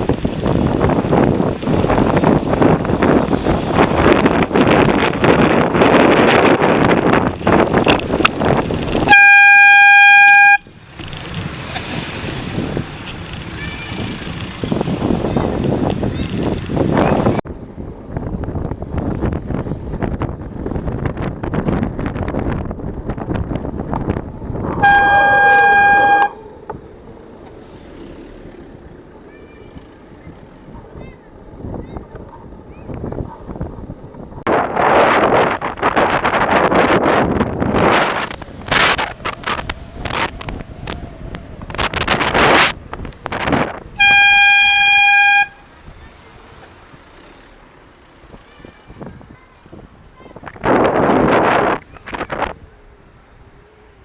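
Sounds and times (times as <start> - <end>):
wind over microphone: 0.0 - 47.4, 48.1 - 54.0
road noise: 0.0 - 54.0
air horn high note: 9.1 - 10.6, 24.7 - 26.5, 44.0 - 45.6.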